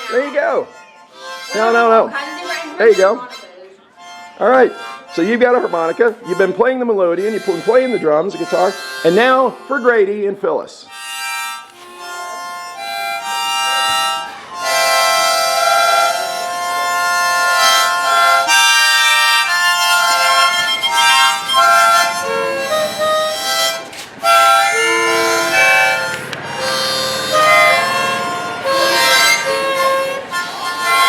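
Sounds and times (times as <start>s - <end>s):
harmonicas playing chords: 0.0s - 10.2s, 10.9s - 31.0s.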